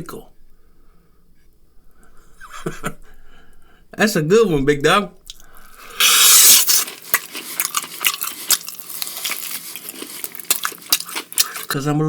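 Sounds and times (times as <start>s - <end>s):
wet clicking chewing: 5.2s - 11.8s
loud slurp: 5.8s - 7.6s.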